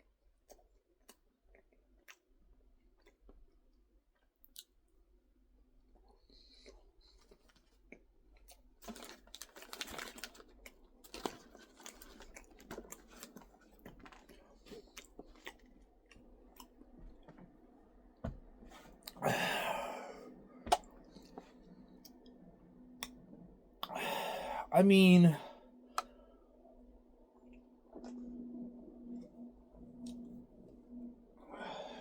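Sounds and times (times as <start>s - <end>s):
close-up chewing: 6.0s - 17.6s.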